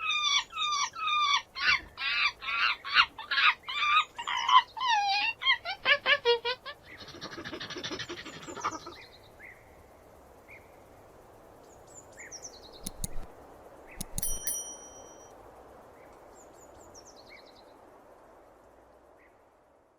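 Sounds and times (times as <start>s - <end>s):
sharp clicks: 12.8s - 15.2s.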